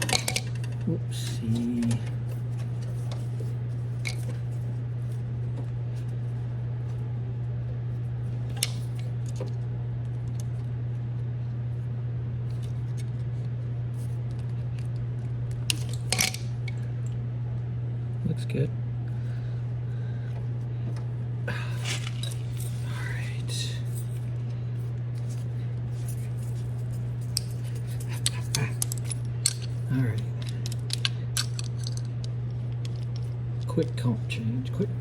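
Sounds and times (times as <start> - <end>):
steady low hum: 0.0 - 35.0
tools clicking and tapping: 27.3 - 32.1.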